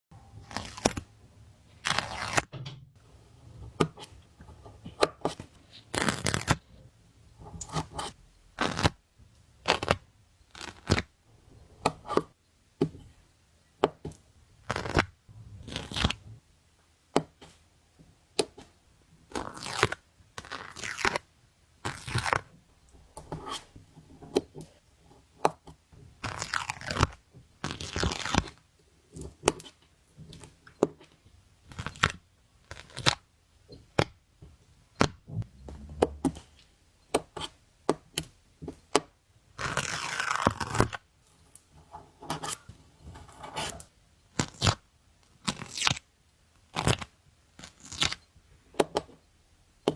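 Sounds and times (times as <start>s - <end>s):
stickers being peeled: 0.4s - 1.1s, 1.8s - 2.5s.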